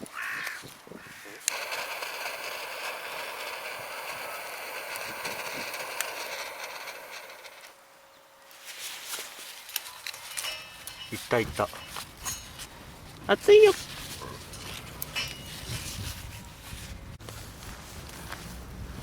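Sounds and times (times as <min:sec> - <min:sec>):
campfire rushing hiss: 0:01.5 - 0:07.8.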